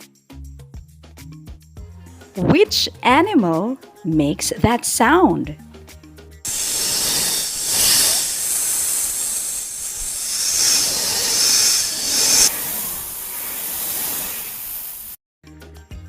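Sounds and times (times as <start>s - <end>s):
snake hissing: 6.5s - 15.2s.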